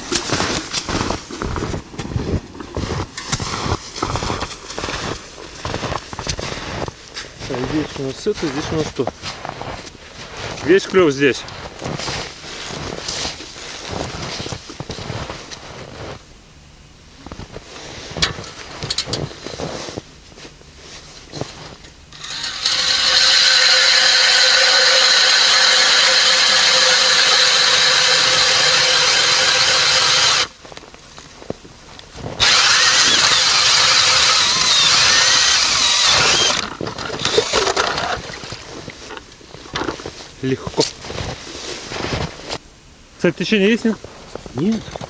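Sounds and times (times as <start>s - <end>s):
cordless drill boring through ice: 22.1s - 30.5s, 32.4s - 38.6s.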